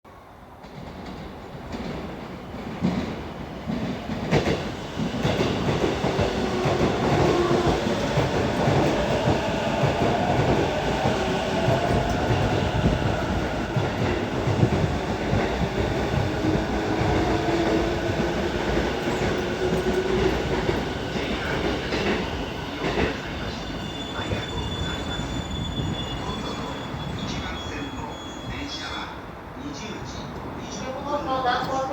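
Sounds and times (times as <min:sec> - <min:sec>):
train braking whine: 0:22.6 - 0:28.9.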